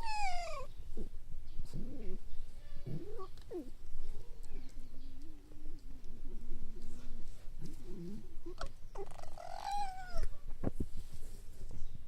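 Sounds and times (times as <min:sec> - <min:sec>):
foxes whining: 0:00.0 - 0:00.7.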